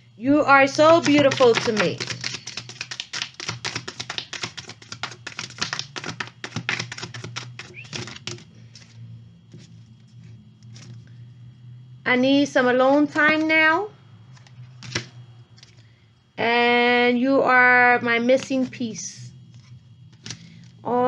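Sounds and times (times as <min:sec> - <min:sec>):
cards being shuffled: 0:00.7 - 0:11.0, 0:14.3 - 0:15.8, 0:19.5 - 0:20.5.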